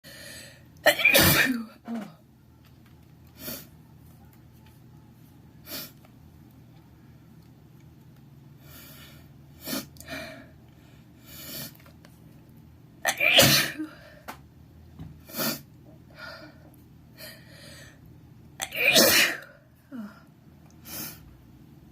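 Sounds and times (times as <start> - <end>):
person sneezing: 18.6 - 19.5.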